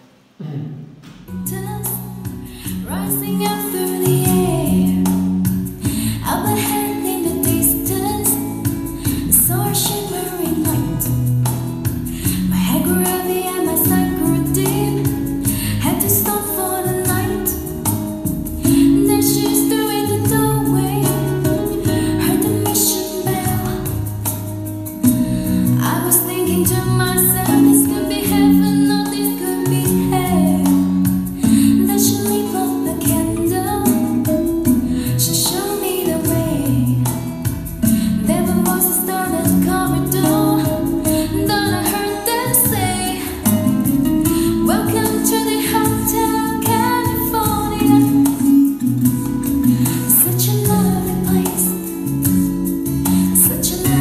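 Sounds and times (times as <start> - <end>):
soft song with female singer: 1.3 - 54.0.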